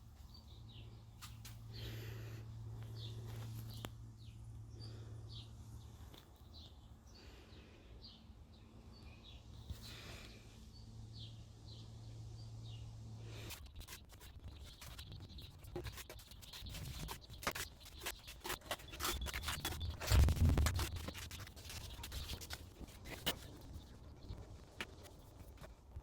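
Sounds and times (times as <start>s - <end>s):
hand tools scraping mortar: 13.3s - 23.8s.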